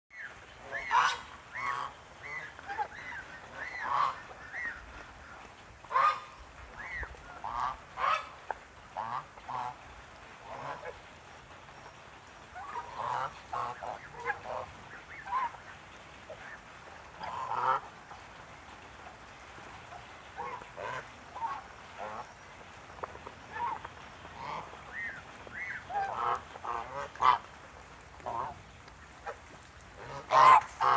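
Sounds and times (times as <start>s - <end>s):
geese honking: 0.6s - 4.8s, 30.0s - 30.9s.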